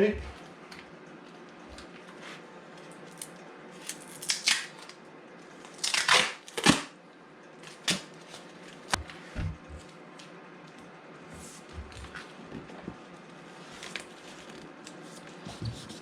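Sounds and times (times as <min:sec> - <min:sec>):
duct tape ripping: 0:03.9 - 0:05.0, 0:05.7 - 0:06.9.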